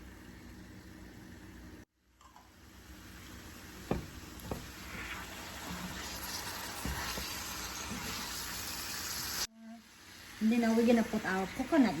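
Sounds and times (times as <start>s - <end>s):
curry sizzling in a frying pan: 0.0s - 12.0s.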